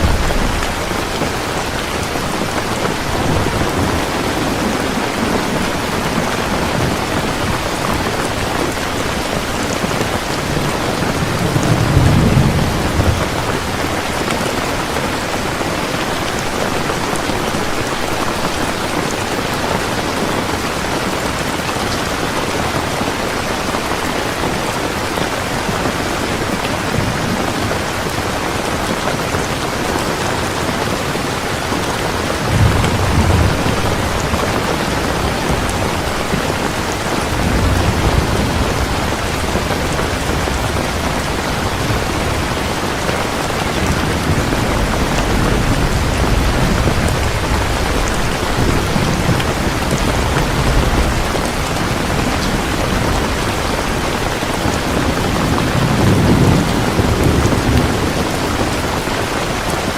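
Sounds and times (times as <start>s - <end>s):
low rumbles of thunder: 0.0s - 15.2s, 32.1s - 58.8s
steady rain: 0.0s - 59.9s.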